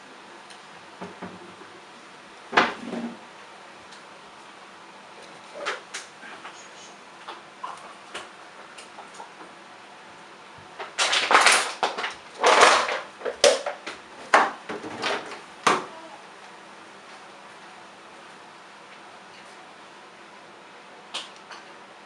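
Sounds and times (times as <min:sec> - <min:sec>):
plastic pieces clicking and clattering: 0:10.8 - 0:14.0.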